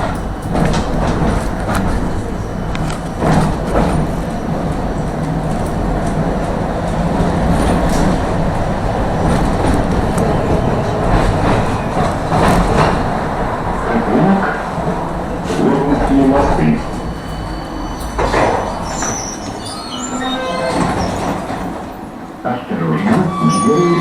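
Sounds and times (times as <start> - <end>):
tram wheels and motor rumbling: 0.0 - 24.0.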